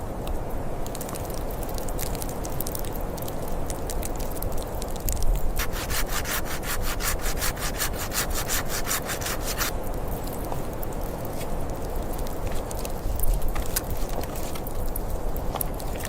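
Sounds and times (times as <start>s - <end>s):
hand saw cutting wood: 5.6s - 9.7s.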